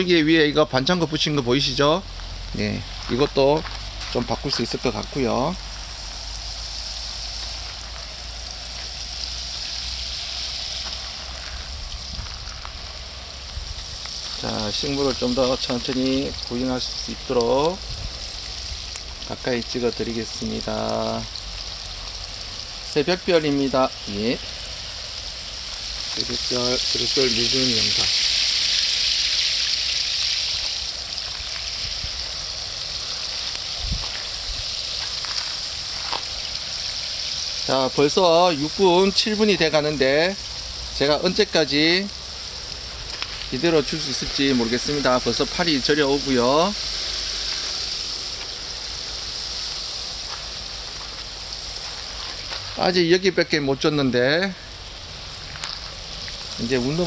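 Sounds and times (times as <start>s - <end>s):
water spraying onto plants: 0.0s - 57.0s.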